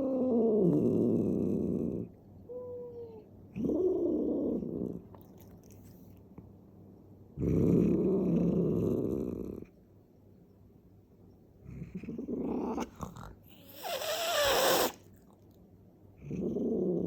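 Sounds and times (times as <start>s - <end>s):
cat growling: 0.0s - 6.0s, 7.4s - 9.7s, 11.6s - 15.3s, 16.2s - 17.0s.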